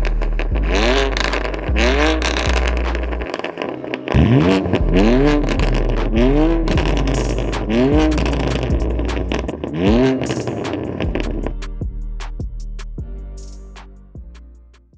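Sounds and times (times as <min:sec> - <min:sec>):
car engine revving: 0:00.0 - 0:13.0
background music: 0:00.0 - 0:14.9.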